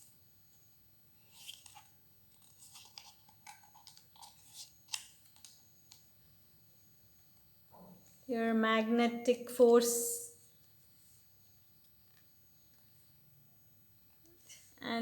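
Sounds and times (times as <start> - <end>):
book rustling and crinkling: 1.2 - 6.0.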